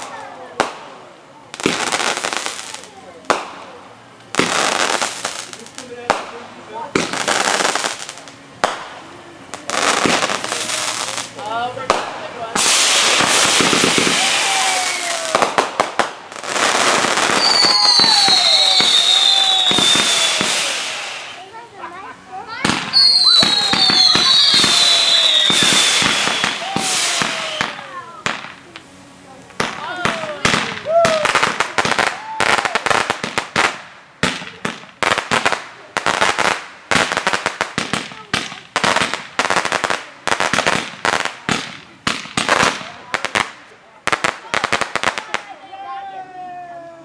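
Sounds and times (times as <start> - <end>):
firework hissing spray: 0.0 - 45.5
crackling pops: 0.0 - 45.6
firework cracks: 0.0 - 45.9
falling whistles: 17.0 - 21.4, 22.9 - 28.0.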